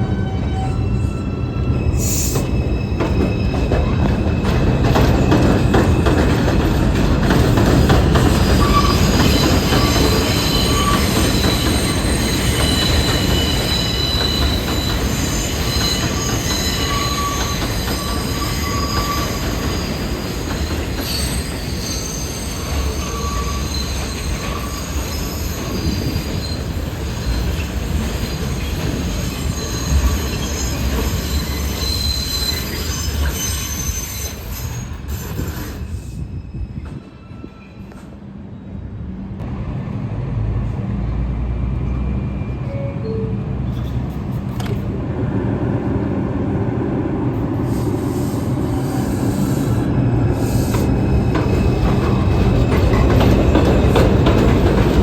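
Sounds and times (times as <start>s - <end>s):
subway train wheel rumble: 0.0s - 55.0s
high-pitched wheel squeal: 8.3s - 27.7s, 29.2s - 38.0s.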